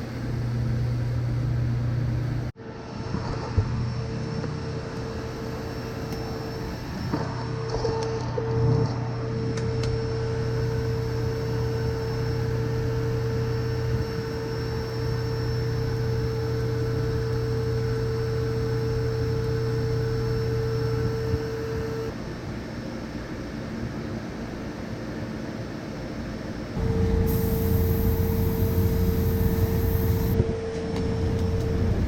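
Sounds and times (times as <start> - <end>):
machine hum: 0.0 - 22.2, 26.8 - 32.0
motor whine: 3.7 - 22.2, 26.8 - 32.0.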